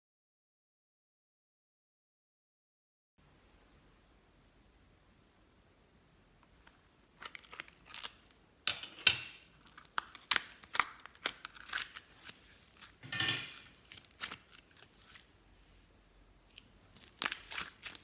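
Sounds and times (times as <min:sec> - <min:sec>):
sharp clicks snaps and crinkles: 0:06.4 - 0:15.3, 0:16.5 - 0:18.0.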